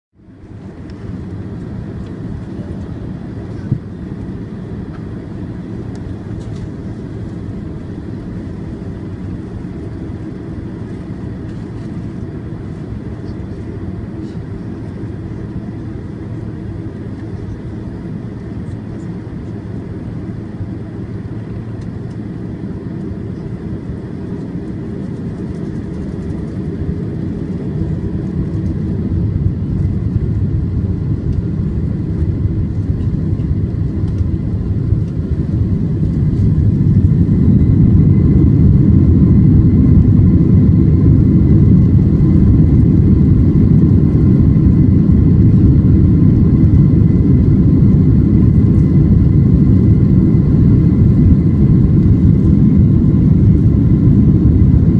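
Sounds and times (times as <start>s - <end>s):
faint jet engine whine: 0.1s - 54.9s
jet engines rumbling: 0.2s - 54.9s.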